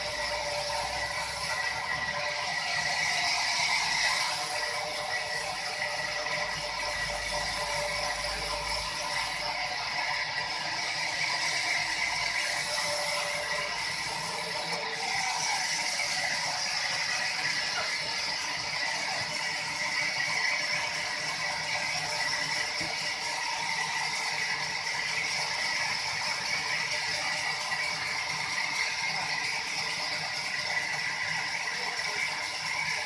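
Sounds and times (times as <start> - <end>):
sawmill machinery rattling: 0.0 - 33.0.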